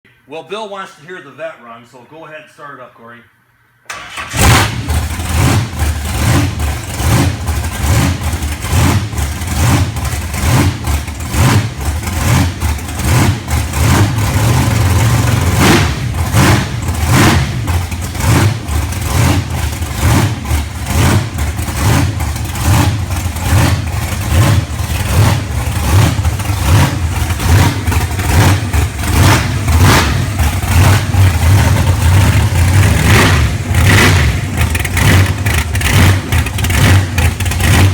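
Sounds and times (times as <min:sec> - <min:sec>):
engine revving with throttle blips: 0:03.9 - 0:37.9.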